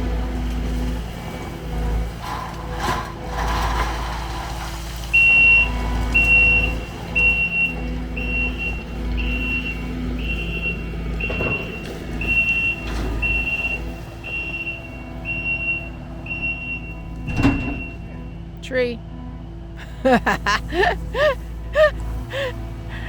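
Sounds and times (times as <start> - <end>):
vehicle engine running: 0.0 - 23.0
vehicle backup alarm beeping: 5.0 - 18.6.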